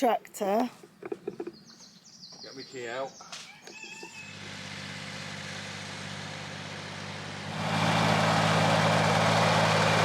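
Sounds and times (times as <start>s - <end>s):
tractor engine revving: 4.2s - 10.0s.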